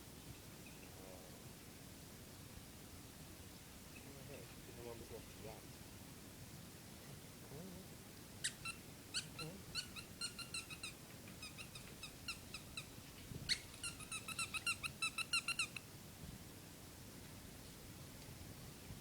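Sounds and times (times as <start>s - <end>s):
rubber squeaky ball squeaking: 13.5s - 15.8s.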